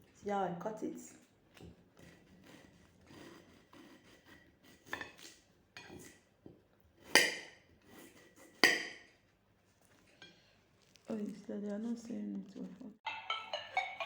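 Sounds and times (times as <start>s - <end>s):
dishware clinking: 13.0s - 14.0s.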